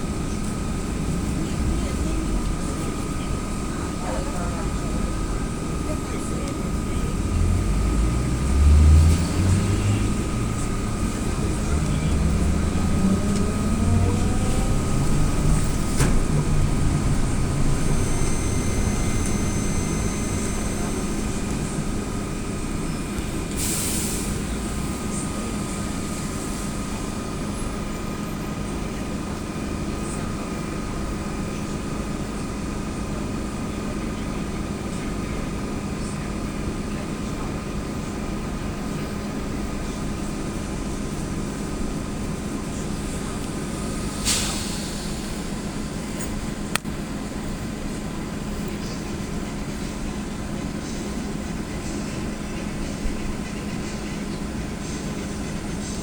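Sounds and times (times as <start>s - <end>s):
electric traction drive whine: 0.0s - 31.3s
steady hum and road rumble: 0.0s - 56.0s
short hiss of air: 23.6s - 24.4s, 44.2s - 45.3s.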